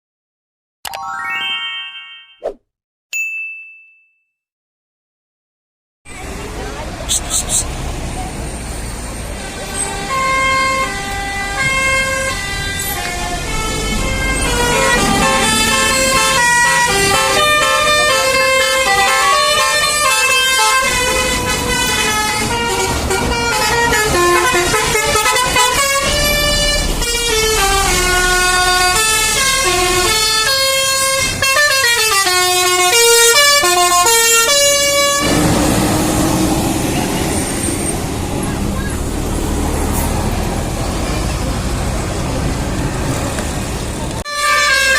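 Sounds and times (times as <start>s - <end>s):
engine and road rumble: 6.1s - 44.9s
bus musical air horn melody: 9.2s - 35.5s, 44.2s - 44.9s.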